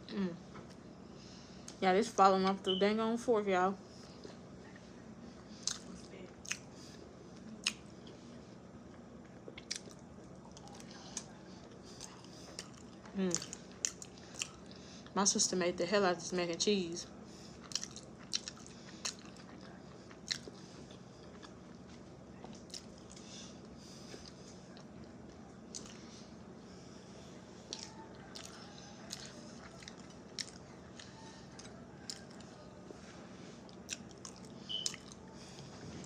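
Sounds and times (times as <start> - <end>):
person chewing food: 5.4 - 15.1, 17.3 - 36.0.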